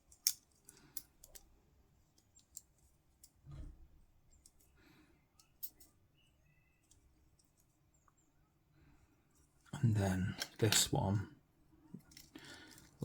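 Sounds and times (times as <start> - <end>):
plastic parts clicking together: 0.0 - 1.5.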